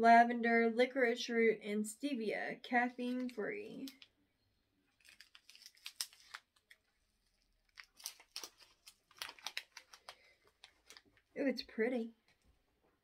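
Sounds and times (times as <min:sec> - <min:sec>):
pouch crinkling and rustling: 0:04.9 - 0:11.3.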